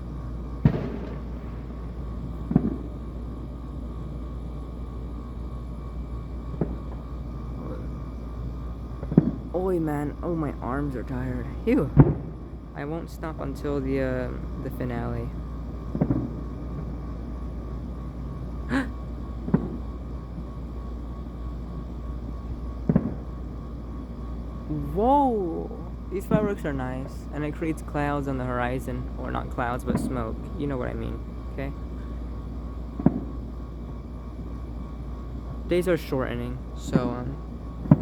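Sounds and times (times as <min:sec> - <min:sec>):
distant fireworks booms: 0:00.0 - 0:09.6, 0:11.4 - 0:12.8, 0:14.4 - 0:25.0, 0:29.0 - 0:35.6, 0:36.7 - 0:38.0
steady low rumble: 0:00.0 - 0:38.0
distant firework bang: 0:00.6 - 0:01.7, 0:02.5 - 0:02.9, 0:33.0 - 0:33.4.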